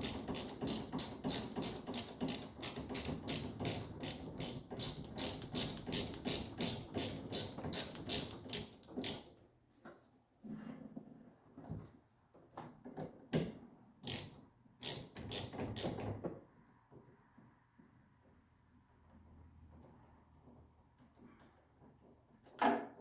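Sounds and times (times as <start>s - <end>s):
ratchet tool clicking: 0.0s - 9.3s, 14.1s - 16.0s.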